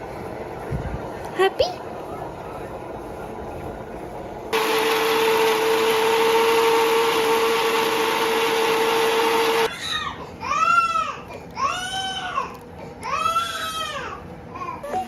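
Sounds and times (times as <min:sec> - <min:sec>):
mixer grinder humming: 0:04.3 - 0:09.7.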